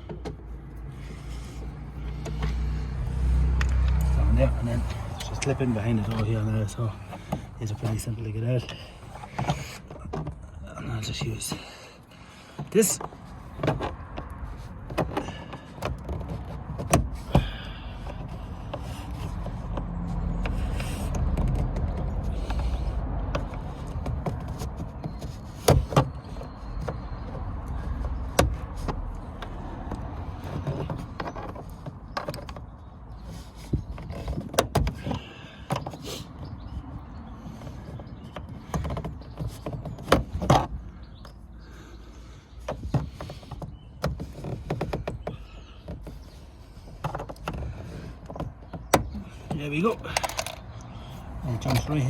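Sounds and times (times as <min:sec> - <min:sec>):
plastic and metal clicks: 0:49.9 - 0:50.9.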